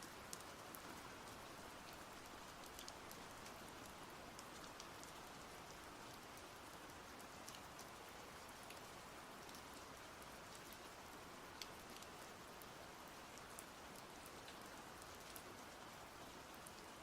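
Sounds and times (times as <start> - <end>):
steady rain hiss: 0.0 - 17.0
raindrops ticking: 0.1 - 12.2.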